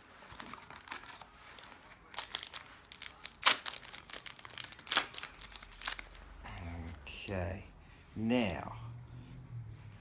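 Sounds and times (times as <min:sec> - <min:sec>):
plastic wrapper crinkling and tearing: 0:00.0 - 0:06.7.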